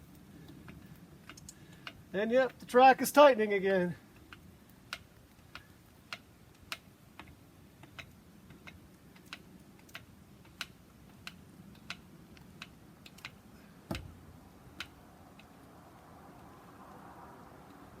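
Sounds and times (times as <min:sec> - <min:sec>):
grease gun clicking: 0:00.1 - 0:02.7, 0:04.2 - 0:14.1.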